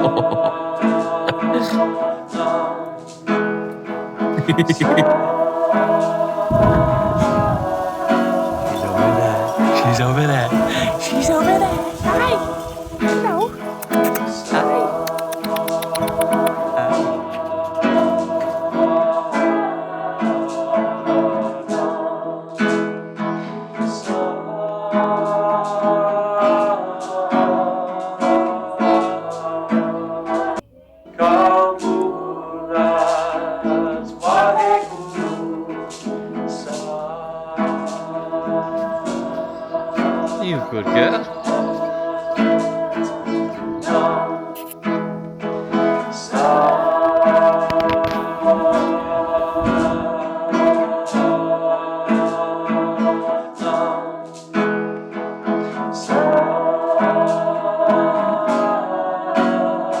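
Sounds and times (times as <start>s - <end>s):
person singing: 0.0s - 3.3s, 4.2s - 22.8s, 23.4s - 54.7s, 55.6s - 60.0s
acoustic guitar strumming chords: 0.0s - 60.0s.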